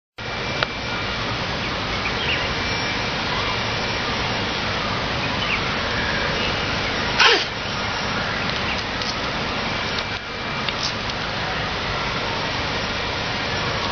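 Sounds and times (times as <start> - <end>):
chimpanzee sneezing: 7.2 - 7.6.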